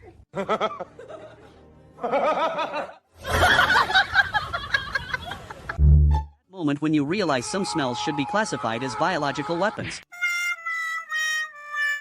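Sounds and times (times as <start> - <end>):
people laughing: 0.3 - 5.8.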